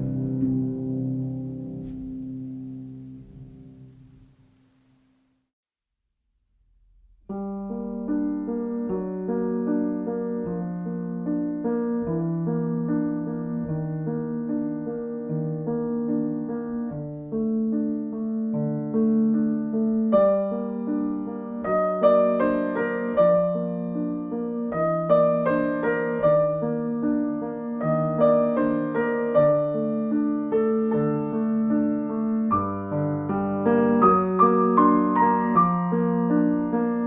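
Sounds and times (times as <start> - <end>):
gentle solo piano music: 0.0 - 4.8, 7.3 - 37.0.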